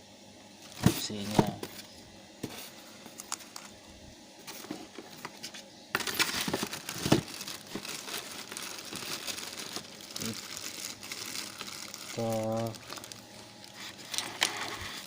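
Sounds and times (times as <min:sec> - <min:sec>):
plastic packaging crinkling: 0:04.5 - 0:15.0.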